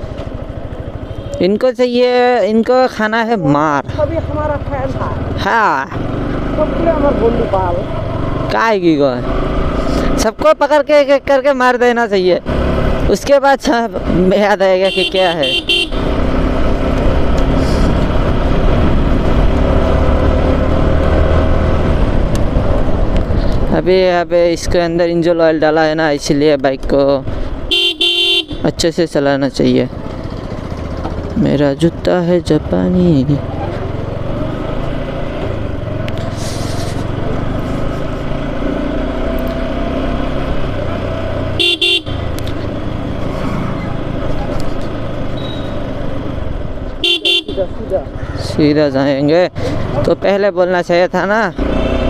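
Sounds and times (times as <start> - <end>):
motorcycle engine: 0.0 - 52.0
road and wind rush: 0.0 - 52.0
vehicle horn beeping: 1.0 - 1.4, 14.8 - 16.1, 27.7 - 28.6, 41.6 - 42.2, 45.4 - 45.8, 47.0 - 47.7
motorcycle engine running: 27.3 - 48.4.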